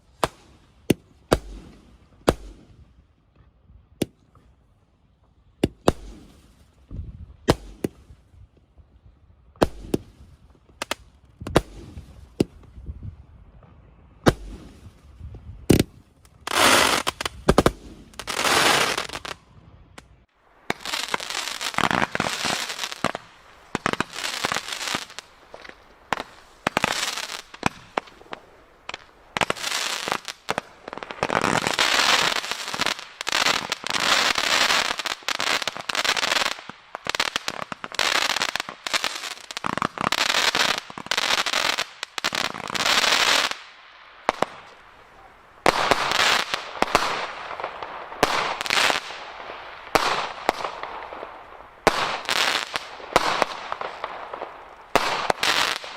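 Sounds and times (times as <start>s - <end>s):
firework crackling: 0.0s - 2.7s, 14.2s - 55.9s
firework shots and bangs: 0.2s - 2.8s, 5.6s - 6.4s, 7.4s - 8.0s, 9.6s - 10.2s, 10.9s - 12.7s, 14.2s - 14.9s, 20.7s - 55.9s.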